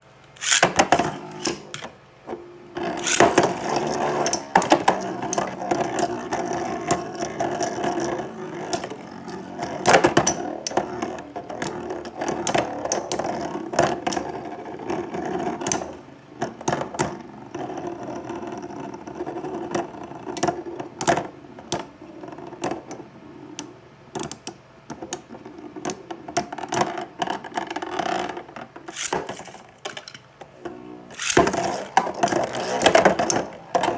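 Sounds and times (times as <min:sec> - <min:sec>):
spinning tops whirring: 0:00.3 - 0:01.9, 0:02.7 - 0:14.9, 0:28.9 - 0:33.9.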